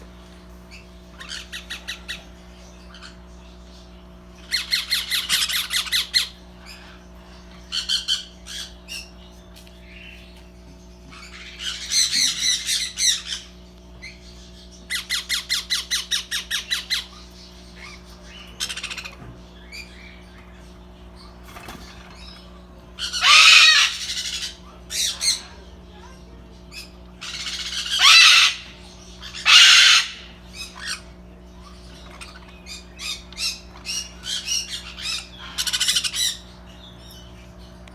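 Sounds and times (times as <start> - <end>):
parrots squawking: 0.0 - 3.7, 4.3 - 9.3, 11.0 - 37.8
parrot harsh screeches: 23.0 - 25.4, 27.2 - 31.0.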